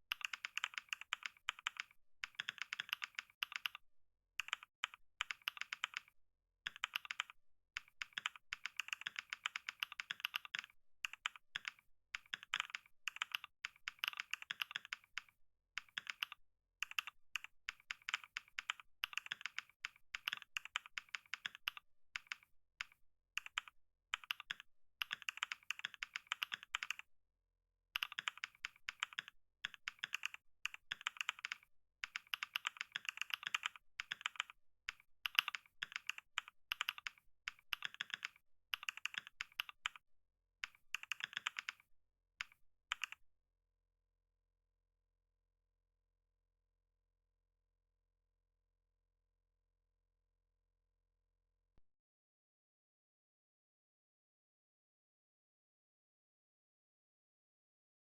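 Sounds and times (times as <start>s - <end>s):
fast typing on keyboard: 0.1s - 3.8s, 4.4s - 27.1s, 28.0s - 40.0s, 40.6s - 41.8s, 42.4s - 43.2s.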